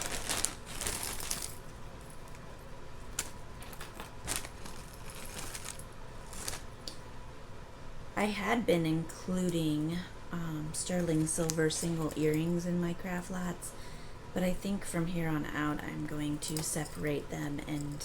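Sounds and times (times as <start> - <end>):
jewelry jangling and clinking: 0.0 - 2.4, 3.0 - 6.6, 16.3 - 18.0.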